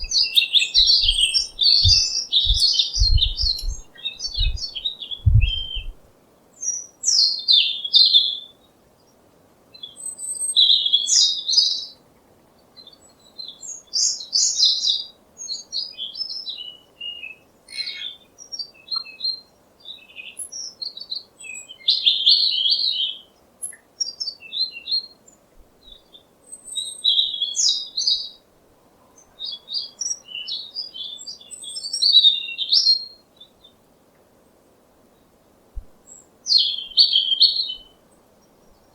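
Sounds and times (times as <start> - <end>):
low thuds: 0.0 - 6.1, 35.8 - 36.0
songbird chirping and trilling: 0.0 - 8.5, 12.8 - 28.4, 29.1 - 33.8, 36.0 - 38.9
faint background hiss: 0.0 - 38.9.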